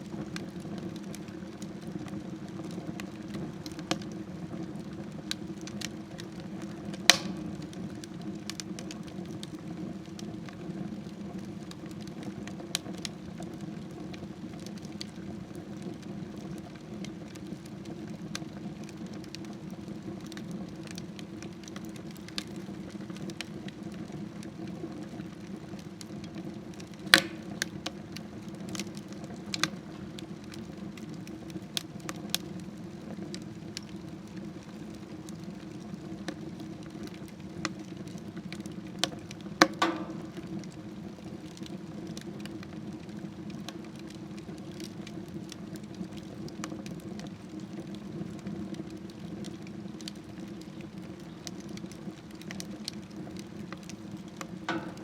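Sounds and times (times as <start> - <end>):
fire crackling and popping: 0.0 - 55.0
low rush of flame: 0.3 - 13.5, 38.6 - 42.3.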